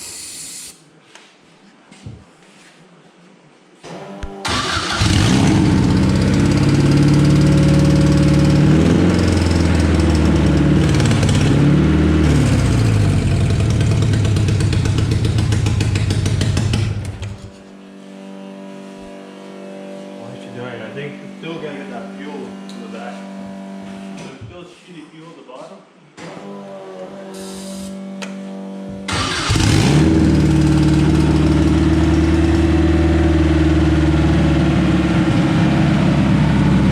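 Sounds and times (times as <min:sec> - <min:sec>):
car engine revving: 0:04.4 - 0:17.6, 0:28.6 - 0:36.9.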